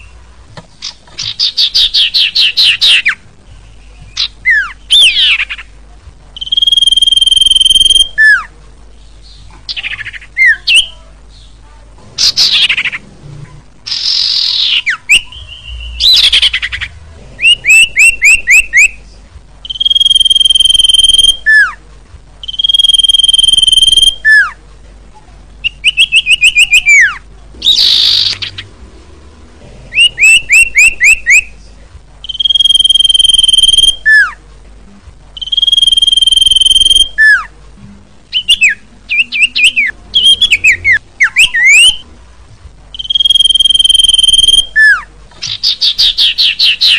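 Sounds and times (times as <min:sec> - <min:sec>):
bird song chips and whistles: 0:04.1 - 0:05.7, 0:06.4 - 0:08.5, 0:13.9 - 0:19.0, 0:19.6 - 0:21.8, 0:22.4 - 0:24.6, 0:25.6 - 0:28.6, 0:30.0 - 0:31.5, 0:32.3 - 0:34.4, 0:35.4 - 0:37.5, 0:38.3 - 0:42.0, 0:43.0 - 0:46.9
harsh downward bird calls: 0:06.4 - 0:08.5, 0:13.9 - 0:19.0, 0:19.6 - 0:21.8, 0:22.4 - 0:24.6, 0:25.6 - 0:28.8, 0:29.9 - 0:31.5, 0:32.2 - 0:34.4, 0:35.4 - 0:37.5, 0:38.3 - 0:42.0, 0:42.9 - 0:46.9.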